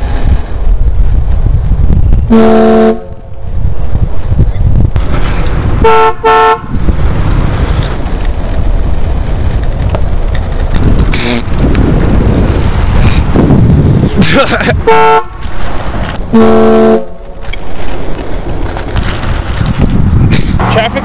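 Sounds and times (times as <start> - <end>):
steady low rumble: 0.0 - 21.0
car horn honking: 5.8 - 6.7, 14.8 - 15.3, 16.3 - 17.2
high-pitched horn toots: 5.8 - 6.7, 16.3 - 17.2.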